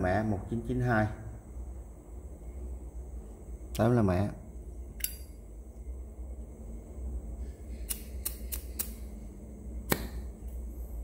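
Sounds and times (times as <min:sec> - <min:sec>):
metal lighter clicks: 0:05.0 - 0:05.3.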